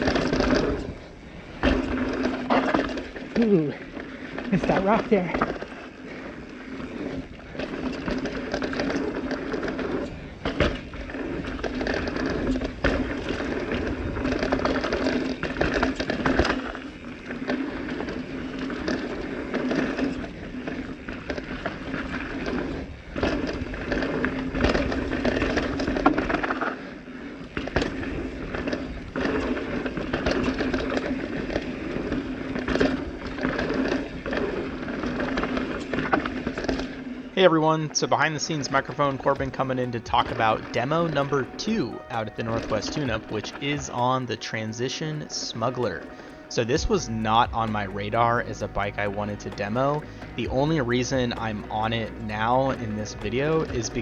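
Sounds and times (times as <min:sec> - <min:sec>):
bike frame and chain clatter: 0:00.0 - 0:04.5, 0:05.4 - 0:37.4
bike tyres rattling over rocks: 0:00.0 - 0:54.0.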